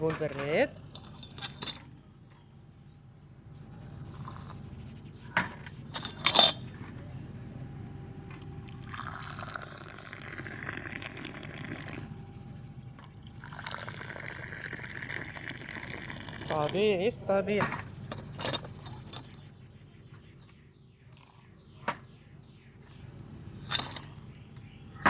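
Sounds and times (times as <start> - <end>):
tea pouring into a glass: 8.7 - 16.8.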